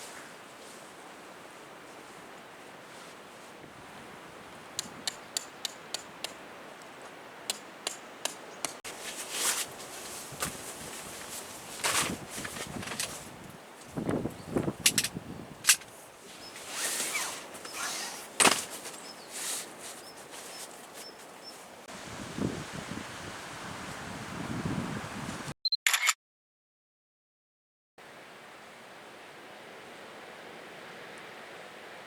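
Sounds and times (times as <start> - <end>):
sea waves washing on shore: 15.9 - 25.5.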